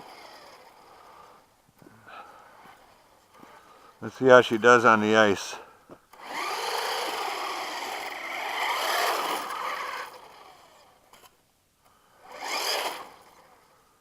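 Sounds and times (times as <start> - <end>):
electric motor whining: 0.0 - 1.4, 6.1 - 11.3, 12.2 - 13.7.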